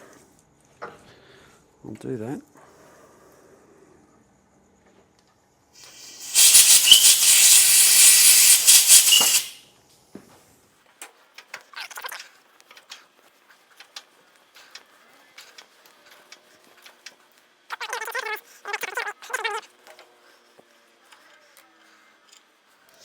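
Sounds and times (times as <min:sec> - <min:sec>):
compressed air blow gun hiss: 0:05.8 - 0:09.6.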